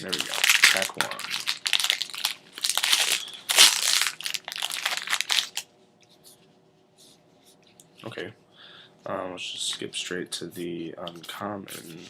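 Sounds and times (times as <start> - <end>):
foil wrapper crinkling: 0.0 - 5.6.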